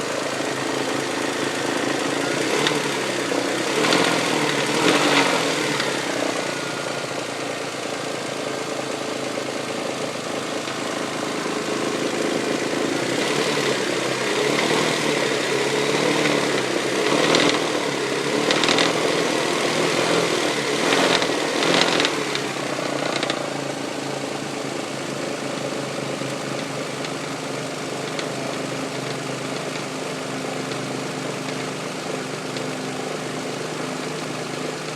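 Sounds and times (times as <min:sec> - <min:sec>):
car engine idling: 0:00.0 - 0:34.9
engine knocking: 0:00.0 - 0:34.9.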